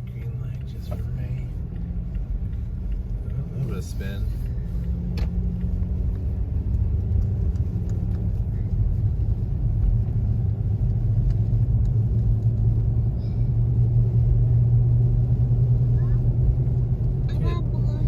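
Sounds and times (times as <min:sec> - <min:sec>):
pickup truck engine and road rumble: 0:00.0 - 0:18.0.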